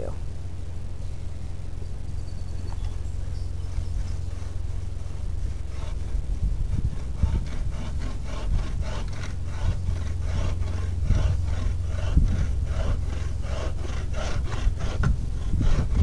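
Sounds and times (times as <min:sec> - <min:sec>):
saw cutting log: 0:04.1 - 0:16.0.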